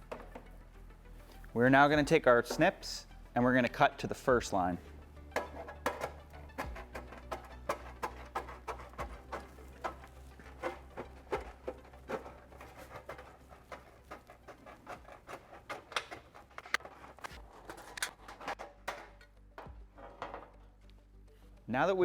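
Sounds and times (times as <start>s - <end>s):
tin snips cutting sheet metal: 5.4s - 19.2s.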